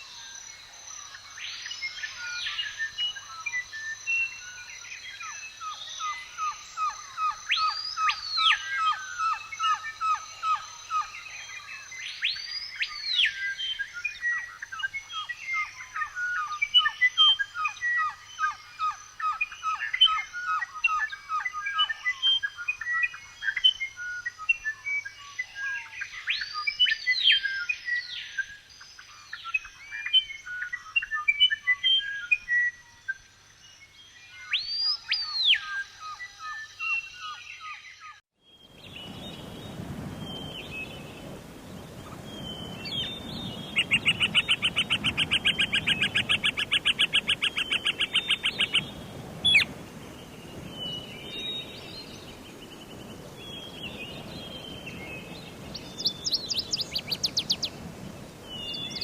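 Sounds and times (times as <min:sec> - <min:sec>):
whistled bird calls: 0:01.5 - 0:32.8, 0:34.2 - 0:59.0
short bird chirps: 0:42.5 - 0:49.7
fast repeated bird trill: 0:43.1 - 0:49.7.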